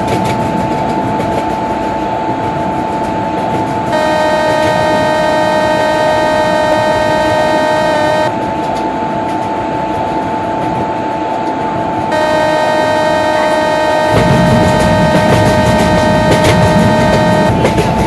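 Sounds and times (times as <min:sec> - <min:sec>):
train rumble and wheel clicks: 0:00.0 - 0:18.0
train horn chord: 0:03.9 - 0:08.4, 0:12.1 - 0:17.6.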